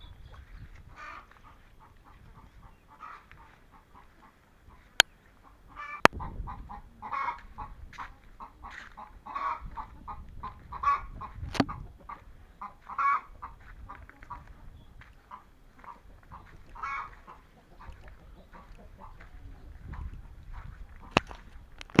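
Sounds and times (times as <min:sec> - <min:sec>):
chickens clucking: 0:00.0 - 0:22.0
sharp clicks: 0:21.2 - 0:22.0.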